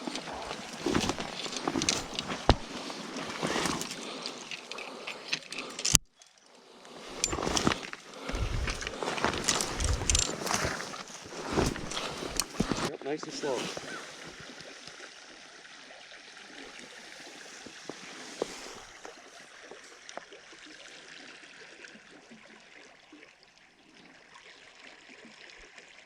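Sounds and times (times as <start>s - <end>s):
creek water flowing: 0.0s - 26.0s
faint clicks and knocks: 7.1s - 12.9s.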